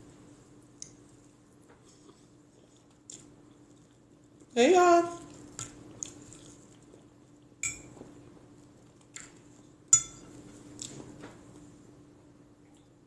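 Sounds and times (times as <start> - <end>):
faint steady hum: 0.0 - 13.0
cutlery clinking against plate: 10.0 - 10.4.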